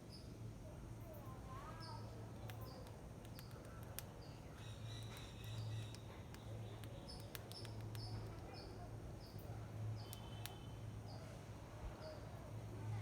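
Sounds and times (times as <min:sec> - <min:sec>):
squirrel nibbling clicks: 0:02.4 - 0:08.7.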